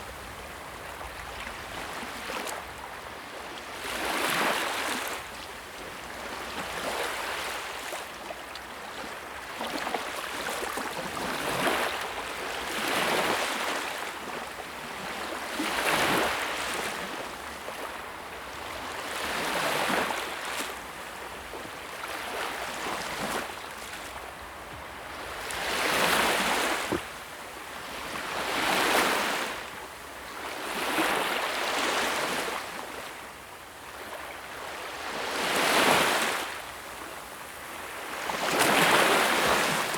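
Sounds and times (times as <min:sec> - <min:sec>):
sea waves breaking on shore: 0:18.7 - 0:33.1, 0:34.0 - 0:39.9.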